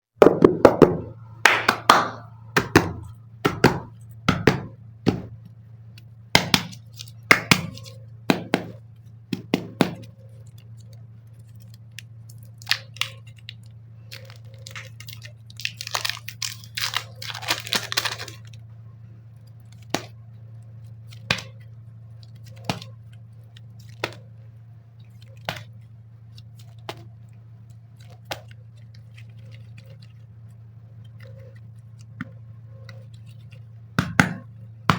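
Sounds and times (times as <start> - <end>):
low steady hum: 0.2 - 34.9
wrappers crinkling and tearing: 6.7 - 8.1, 10.2 - 18.6, 25.0 - 33.8.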